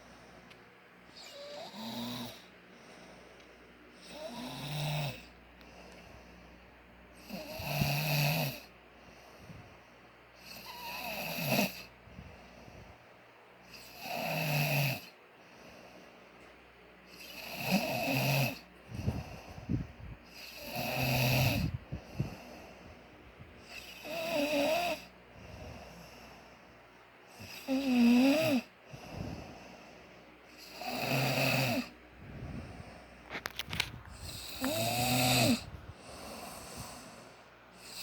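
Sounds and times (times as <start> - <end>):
soft breathing: 0.0 - 7.9, 8.6 - 10.8, 11.8 - 13.7, 15.1 - 17.4, 18.6 - 20.6, 21.5 - 24.2, 24.9 - 27.8, 28.4 - 30.9, 31.8 - 38.0
person snoring: 1.2 - 2.5, 4.0 - 5.4, 7.2 - 8.7, 10.4 - 11.9, 17.1 - 22.8, 23.6 - 26.5, 27.3 - 30.0, 30.6 - 38.0.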